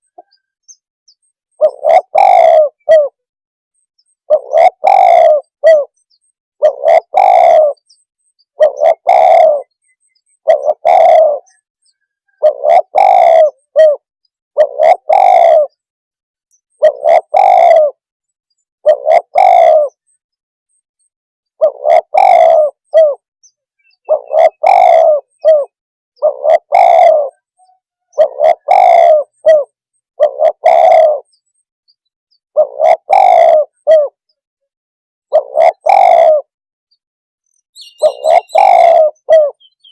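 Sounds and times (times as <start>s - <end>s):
dove cooing: 0.0s - 0.4s, 1.6s - 3.3s, 4.0s - 6.0s, 6.6s - 7.9s, 8.5s - 15.8s, 16.7s - 18.1s, 18.8s - 20.2s, 21.6s - 23.2s, 23.9s - 31.4s, 32.5s - 34.3s, 35.3s - 36.5s, 37.8s - 39.9s.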